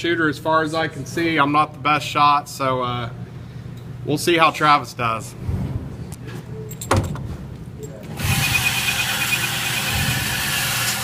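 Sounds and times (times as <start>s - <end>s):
electric motor whirring: 8.2s - 11.0s.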